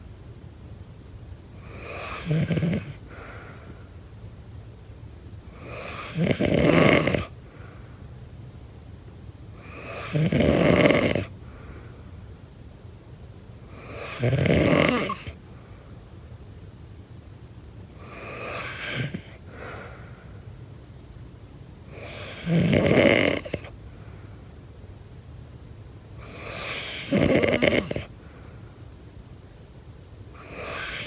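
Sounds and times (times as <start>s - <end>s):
quiet breathing: 1.5s - 4.2s, 5.4s - 8.3s, 9.5s - 12.4s, 17.9s - 20.8s, 21.8s - 24.8s, 26.1s - 31.0s
person snoring: 1.6s - 3.0s, 5.6s - 7.3s, 9.8s - 11.3s, 13.8s - 15.3s, 18.0s - 19.4s, 21.9s - 23.7s, 26.2s - 28.1s, 30.4s - 31.0s.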